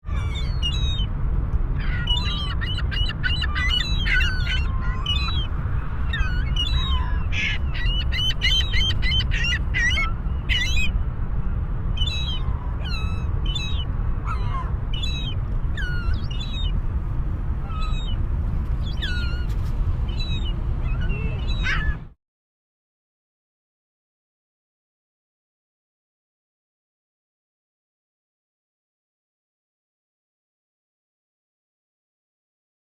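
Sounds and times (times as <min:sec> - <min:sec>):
birds chirping: 0:00.1 - 0:22.1
steady low rumble: 0:00.1 - 0:22.2.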